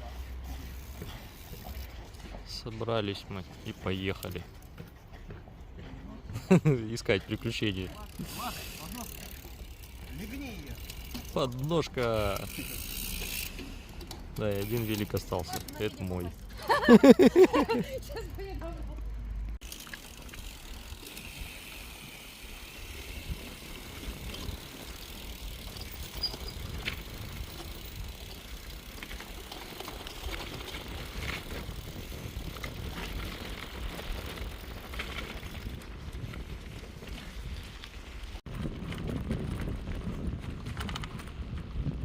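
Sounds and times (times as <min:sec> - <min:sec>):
bicycle rattling: 0:00.0 - 0:42.0
bicycle tyres rolling: 0:00.0 - 0:42.0
wind rumble on microphone: 0:30.2 - 0:42.0.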